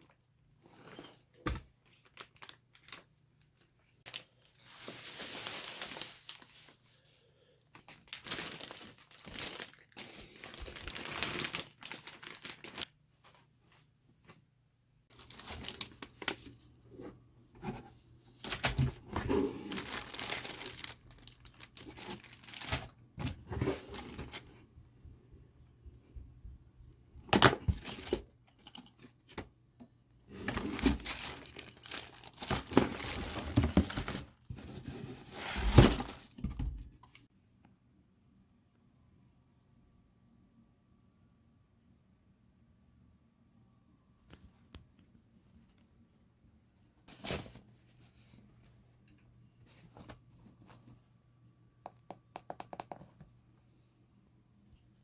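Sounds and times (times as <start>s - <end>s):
plastic wrapping rustling: 1.8s - 13.4s, 15.1s - 16.8s, 18.4s - 24.5s, 30.3s - 37.1s
sharp clicks and taps: 51.9s - 53.2s.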